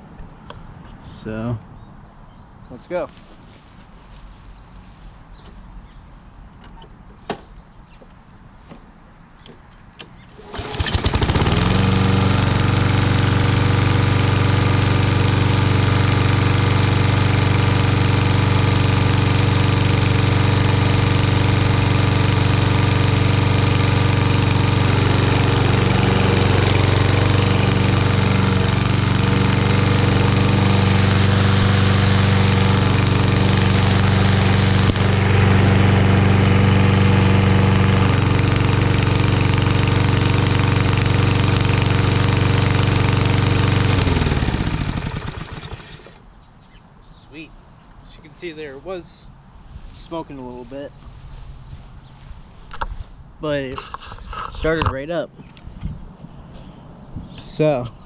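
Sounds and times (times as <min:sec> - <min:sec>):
lawnmower engine running: 0:10.4 - 0:46.3.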